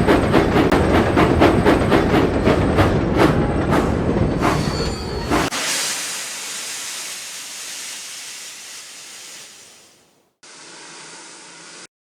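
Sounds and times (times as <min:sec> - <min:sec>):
steam locomotive hissing steam: 0:05.3 - 0:11.9
faint steady hiss: 0:05.6 - 0:10.3.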